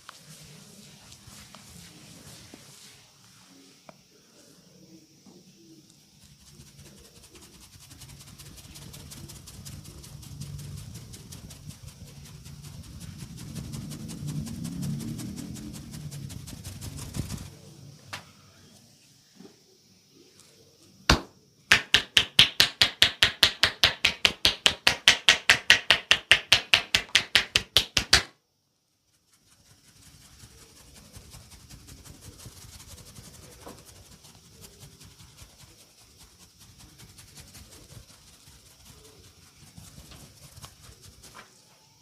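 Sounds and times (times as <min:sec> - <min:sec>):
rapid chopping strikes: 0:21.1 - 0:28.3
hand slapping: 0:21.1 - 0:28.4.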